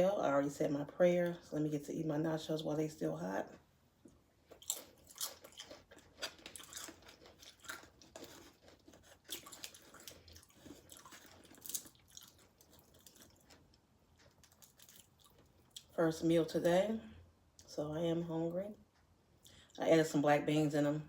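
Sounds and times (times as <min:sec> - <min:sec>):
chewing and crunching chips: 0:03.4 - 0:16.0.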